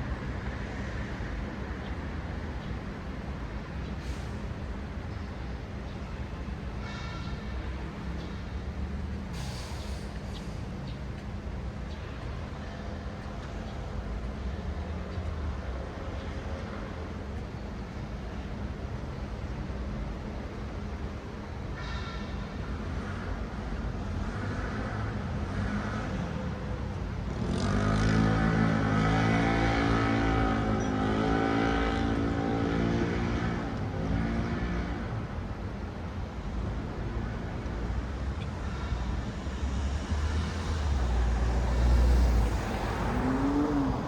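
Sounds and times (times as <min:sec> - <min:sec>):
cars passing: 0:22.5 - 0:44.0
vehicle engine hum: 0:22.8 - 0:44.0
deep vehicle rumble: 0:23.9 - 0:44.0.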